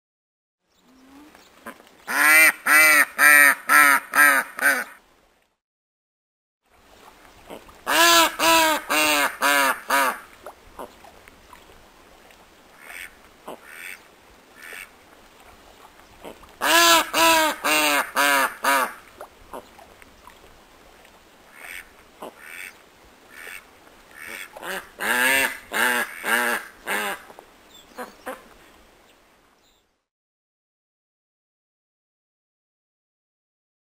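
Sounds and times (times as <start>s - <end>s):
duck quacking: 1.6s - 5.0s, 7.5s - 10.2s, 12.8s - 14.0s, 16.2s - 19.6s, 21.5s - 23.6s, 24.2s - 27.2s.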